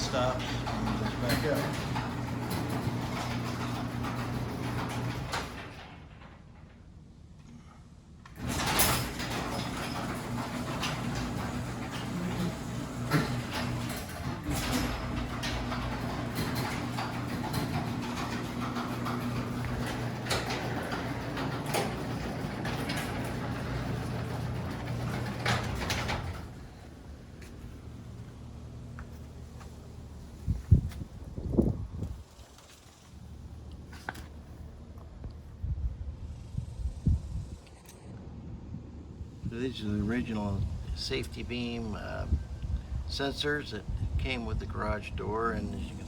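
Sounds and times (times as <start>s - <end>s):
garage door clattering: 0.0s - 28.8s
garage door opener motor hum: 0.0s - 30.9s.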